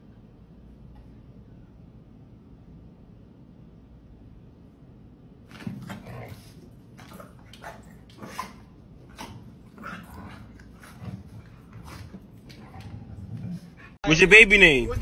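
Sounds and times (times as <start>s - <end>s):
dog vocalizing: 5.5s - 14.0s.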